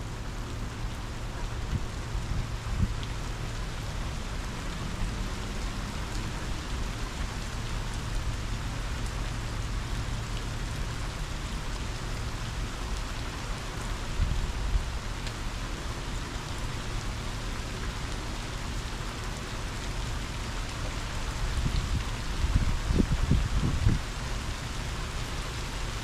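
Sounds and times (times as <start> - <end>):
heavy rain falling: 0.0 - 26.0
strong wind rumble: 21.4 - 24.8.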